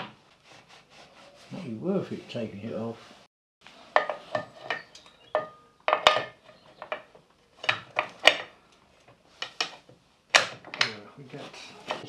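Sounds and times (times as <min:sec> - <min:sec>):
ringing metal knocks: 0:03.9 - 0:08.5.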